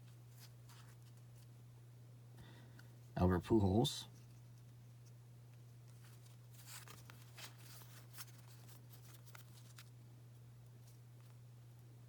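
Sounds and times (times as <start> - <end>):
trading cards rustling: 5.9 - 9.9.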